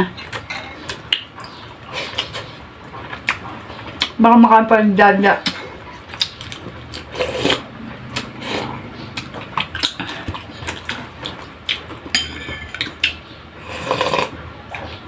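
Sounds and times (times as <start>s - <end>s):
cutlery clinking on plates: 0.0s - 1.0s, 12.1s - 13.2s.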